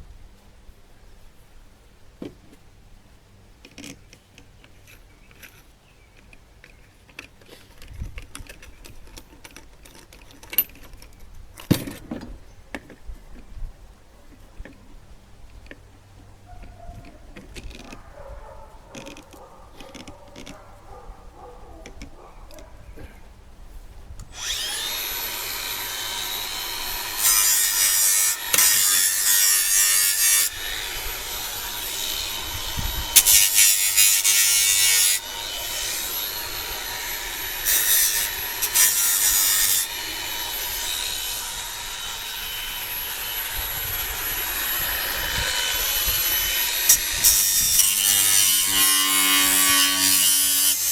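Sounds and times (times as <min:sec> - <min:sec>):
handheld power tool whining: 0:24.3 - 0:50.9.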